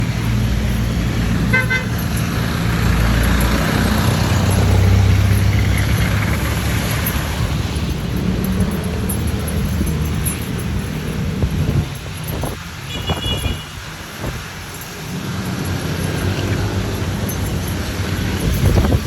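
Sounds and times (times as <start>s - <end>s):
vehicle engine running: 0.0s - 12.8s
street traffic: 0.0s - 19.0s
car horn toot: 1.5s - 2.0s, 12.9s - 13.8s.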